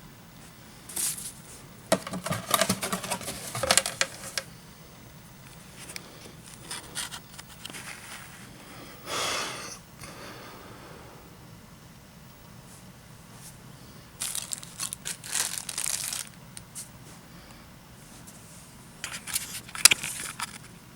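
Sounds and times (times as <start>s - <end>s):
packaging clicks and knocks: 1.9s - 4.5s, 14.2s - 16.4s.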